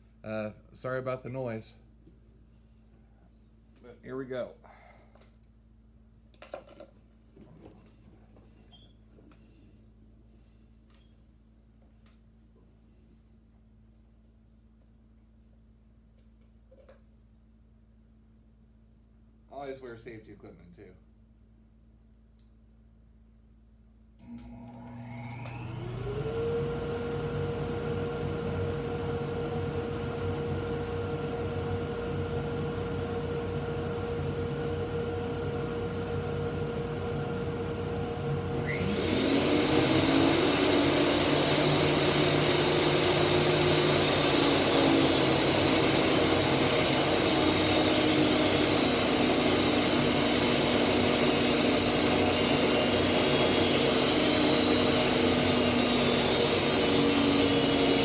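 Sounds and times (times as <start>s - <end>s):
planer rushing with high whine: 24.9s - 58.0s
machine humming: 28.5s - 58.0s.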